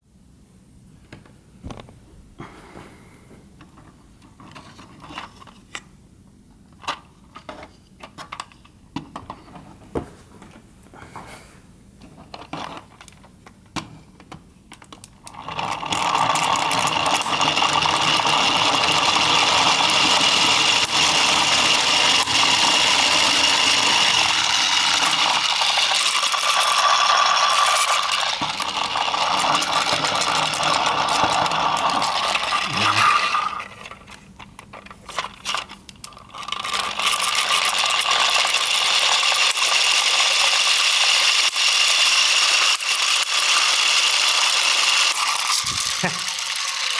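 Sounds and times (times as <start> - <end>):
plastic gears rattling whir: 14.8 - 46.9.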